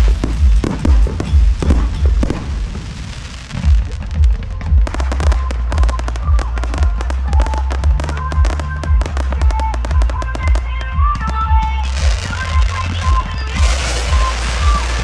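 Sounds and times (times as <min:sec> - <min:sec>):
fireworks booming and popping: 0:00.0 - 0:15.0
music playing: 0:00.0 - 0:15.0.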